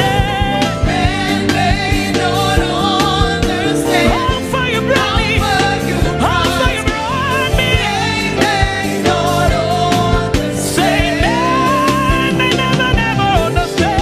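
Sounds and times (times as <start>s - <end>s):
live band with drums and bass: 0.0s - 14.0s
woman singing gospel song: 0.6s - 7.0s.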